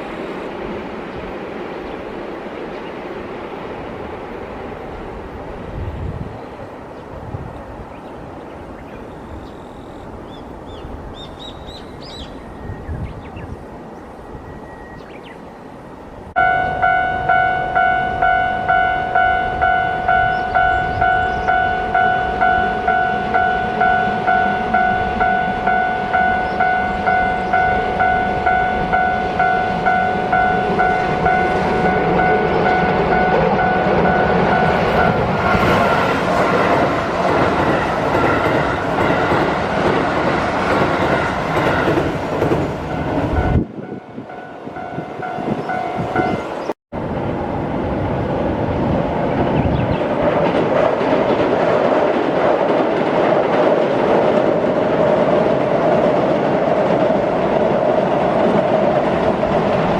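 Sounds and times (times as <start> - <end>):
steady outdoor hiss: 0.0 - 35.4
electric train rumbling: 0.0 - 59.9
small bird chirping: 8.0 - 14.1
level crossing warning bell: 16.4 - 36.0, 42.8 - 46.8.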